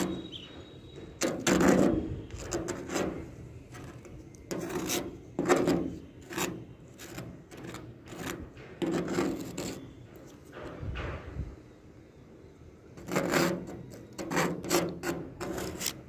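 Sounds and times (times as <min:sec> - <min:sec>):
rough scraping strokes: 0:01.2 - 0:09.9, 0:13.0 - 0:16.0.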